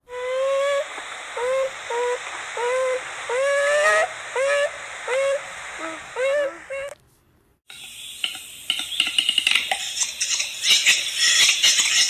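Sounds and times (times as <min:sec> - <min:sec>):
animal calls rising in pitch: 0:01.4 - 0:07.0.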